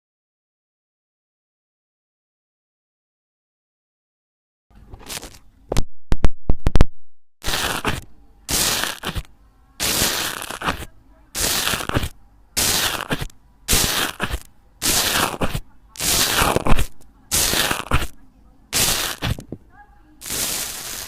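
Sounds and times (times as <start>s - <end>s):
slime squelching: 7.4s - 18.2s.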